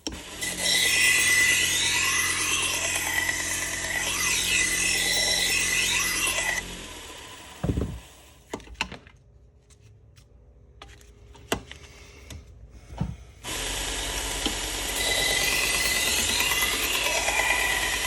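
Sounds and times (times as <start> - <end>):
belt sander whining: 0.0 - 8.4, 13.4 - 18.0.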